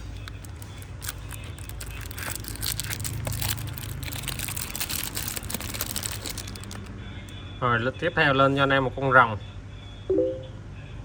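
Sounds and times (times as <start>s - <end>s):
packaging rustling and crinkling: 0.0s - 6.9s.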